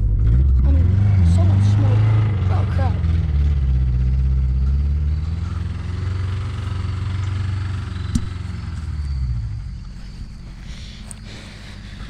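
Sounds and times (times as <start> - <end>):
vehicle engine running: 0.0 - 12.0
sharp click: 8.1 - 8.4.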